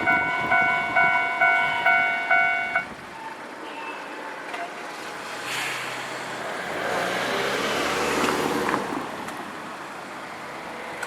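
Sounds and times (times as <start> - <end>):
vehicle passing close by: 5.0 - 11.0.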